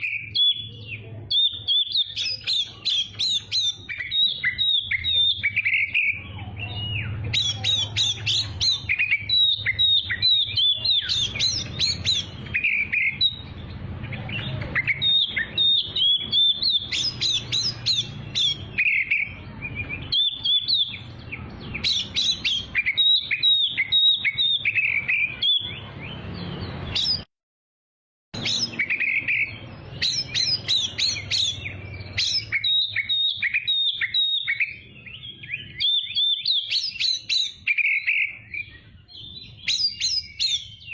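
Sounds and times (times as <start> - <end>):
bird singing whistles and trills: 0.0 - 27.2, 28.4 - 40.9.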